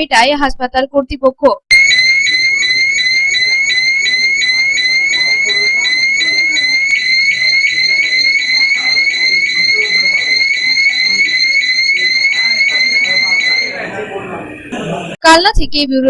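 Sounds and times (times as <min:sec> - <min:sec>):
fire alarm chirping: 0:01.7 - 0:14.2.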